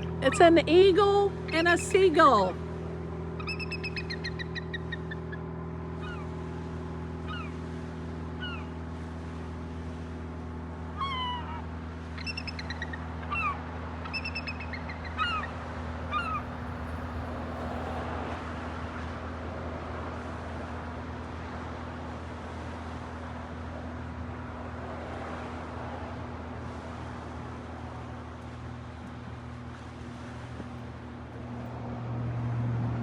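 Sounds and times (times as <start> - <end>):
steady low hum: 0.0 - 33.0
seagull mewing cries: 3.4 - 5.3, 6.0 - 6.3, 7.3 - 7.6, 8.4 - 8.7, 11.0 - 17.9.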